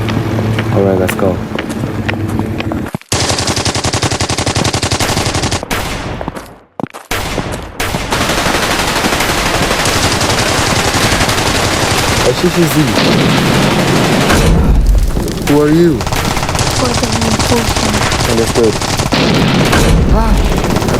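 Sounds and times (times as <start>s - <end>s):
rapid machine-gun fire: 3.1s - 6.1s, 7.1s - 20.9s
heavy gunfire: 7.1s - 20.9s.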